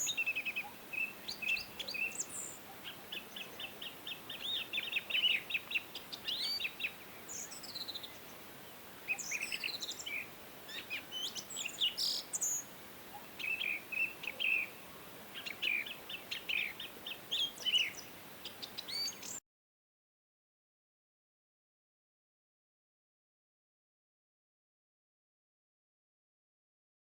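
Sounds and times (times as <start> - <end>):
faint background hiss: 0.0 - 19.4
songbirds chirping: 0.0 - 19.4.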